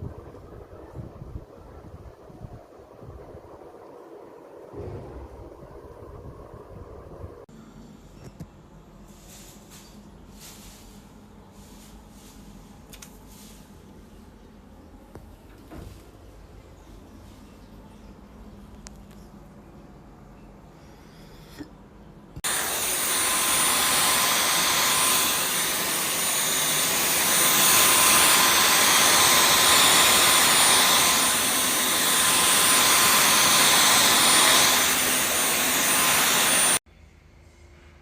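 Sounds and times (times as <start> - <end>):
vacuum cleaner motor whine: 22.4 - 36.8.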